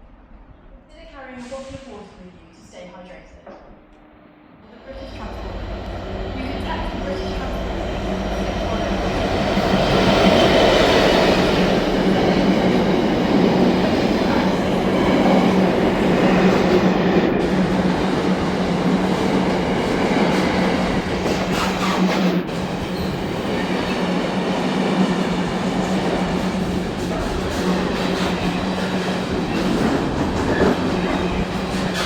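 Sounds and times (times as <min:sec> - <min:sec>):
diesel train engine rumbling: 0:04.7 - 0:21.4.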